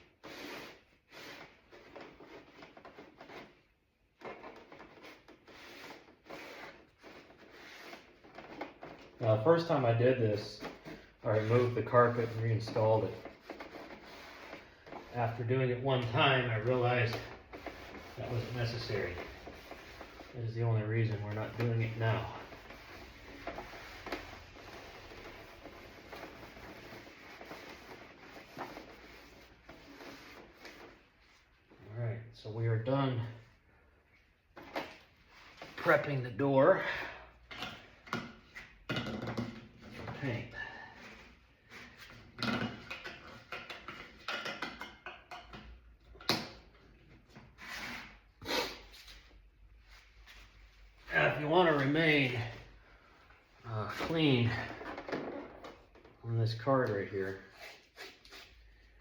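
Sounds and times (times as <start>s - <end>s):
scratchy rubbing on plastic: 0.1s - 3.7s, 4.4s - 9.2s, 10.6s - 31.7s.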